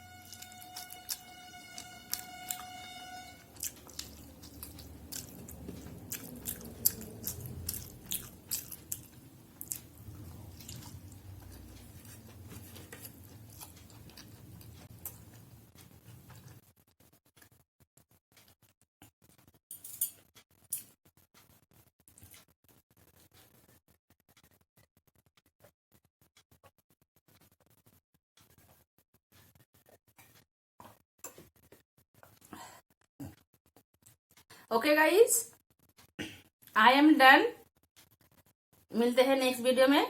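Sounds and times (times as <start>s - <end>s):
person chewing: 0.2s - 16.6s.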